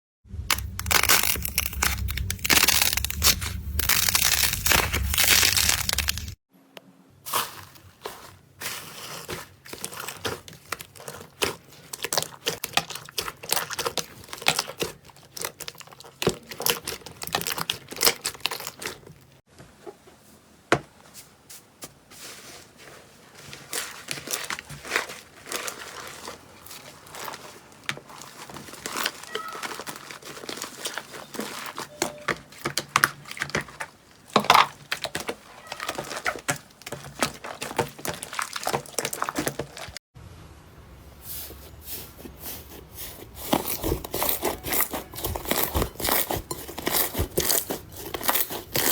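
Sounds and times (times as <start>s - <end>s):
slime squeezed by hand: 0.5s - 6.4s, 28.2s - 32.2s.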